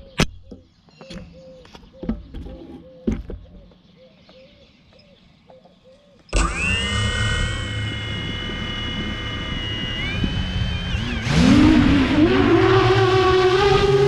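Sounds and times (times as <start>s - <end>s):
faint bird calls: 0.0s - 6.4s
quadcopter motors whining: 6.3s - 14.0s.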